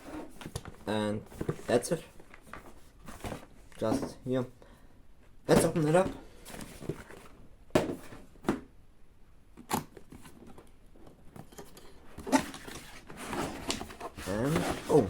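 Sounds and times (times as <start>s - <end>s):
packaging rustling: 12.2s - 15.0s.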